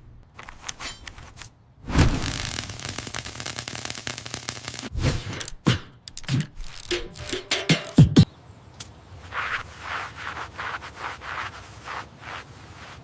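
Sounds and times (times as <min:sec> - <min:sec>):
knocks and clicks: 0:05.4 - 0:08.3.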